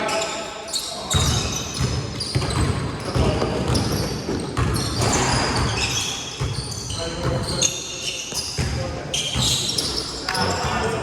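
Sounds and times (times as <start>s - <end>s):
shoe squeaks on court: 0.0s - 11.0s
basketball bouncing: 1.2s - 7.6s.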